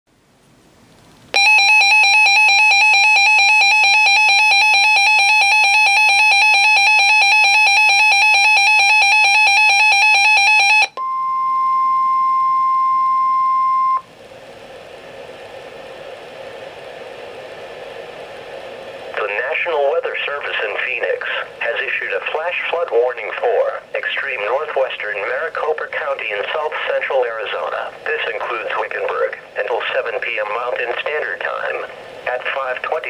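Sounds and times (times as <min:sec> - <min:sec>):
steady alarm tone: 0:01.4 - 0:14.1
radio hiss: 0:14.5 - 0:33.0.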